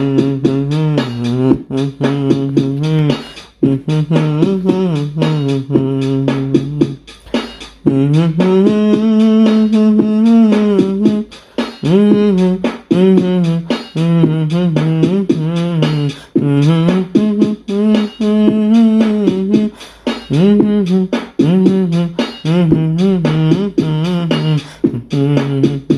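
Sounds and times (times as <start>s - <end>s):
wavering melody over clicking beat: 0.0s - 25.9s.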